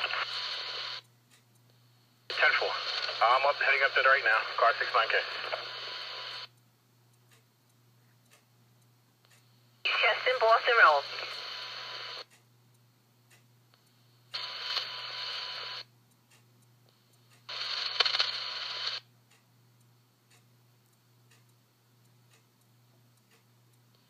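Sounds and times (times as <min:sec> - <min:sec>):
radio static bursts: 0:00.0 - 0:01.0, 0:02.3 - 0:06.5, 0:09.9 - 0:12.3, 0:14.4 - 0:15.8, 0:17.5 - 0:19.0
faint regular ticking: 0:00.0 - 0:24.0.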